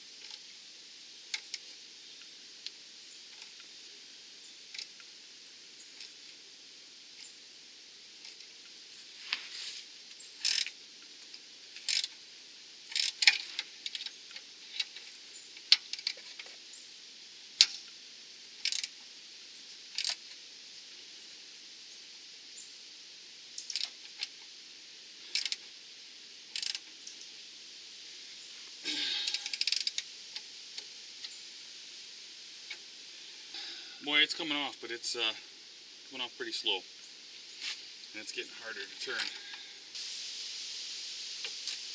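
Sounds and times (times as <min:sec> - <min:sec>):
ratcheting wrench clicking: 0:10.4 - 0:10.7, 0:11.8 - 0:12.2, 0:12.9 - 0:14.1, 0:18.6 - 0:19.0, 0:20.0 - 0:20.2, 0:23.7 - 0:23.9, 0:25.3 - 0:25.6, 0:26.5 - 0:26.8, 0:29.3 - 0:30.0.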